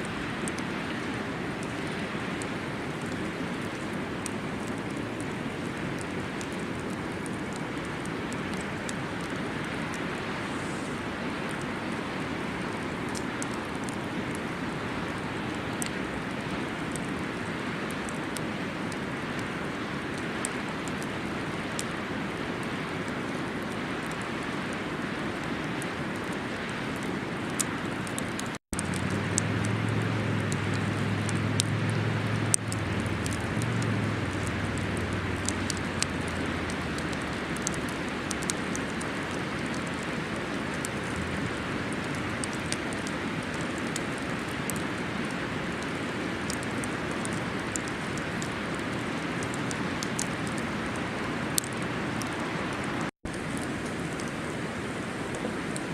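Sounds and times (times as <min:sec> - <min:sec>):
campfire crackling and popping: 0:00.0 - 0:55.9
steady rushing noise: 0:00.0 - 0:55.9
low steady hum: 0:28.8 - 0:37.8.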